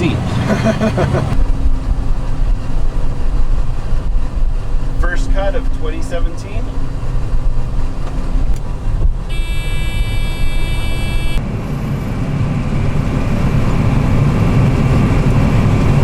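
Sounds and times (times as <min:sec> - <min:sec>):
combine harvester low rumble: 0:00.0 - 0:16.0
high steady tone: 0:09.3 - 0:11.4.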